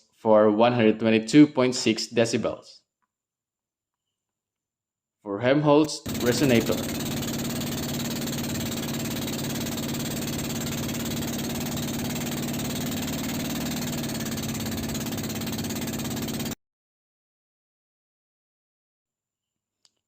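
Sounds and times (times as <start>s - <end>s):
mechanical clatter: 6.0s - 16.6s
boat engine droning: 6.1s - 16.6s.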